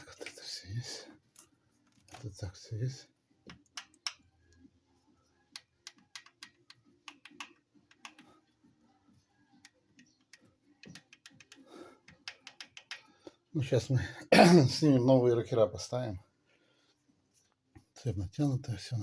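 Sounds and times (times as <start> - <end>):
faint clicks and light taps: 5.5 - 8.4, 9.5 - 13.4.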